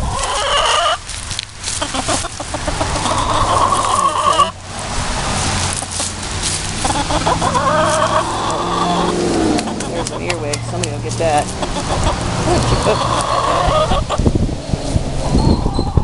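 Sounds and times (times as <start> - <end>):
chicken calling: 0.0 - 1.0, 1.7 - 4.6, 5.8 - 10.8, 11.4 - 14.3.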